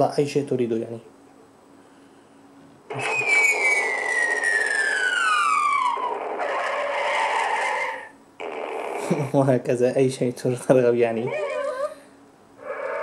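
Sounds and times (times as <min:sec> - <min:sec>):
noisy hiss: 0:00.0 - 0:11.4
falling whistle-like tone: 0:02.9 - 0:08.1.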